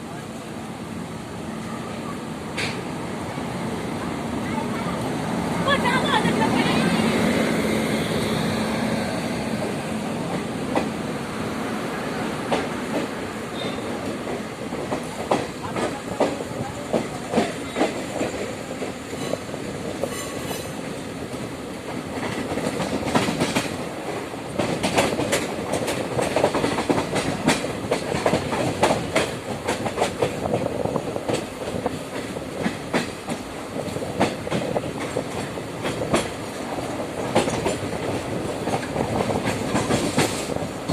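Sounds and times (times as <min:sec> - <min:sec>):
train rumble: 0:00.0 - 0:40.9
train wheels clacking over rail joints: 0:12.4 - 0:40.9.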